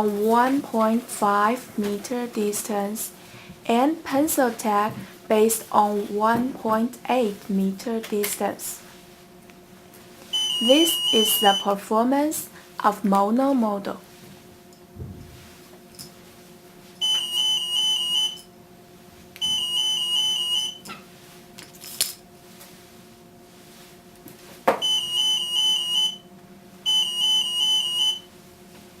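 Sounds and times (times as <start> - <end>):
security gate alarm beeping: 10.3 - 11.8, 17.0 - 18.5, 19.4 - 20.8, 24.8 - 26.3, 26.9 - 28.3.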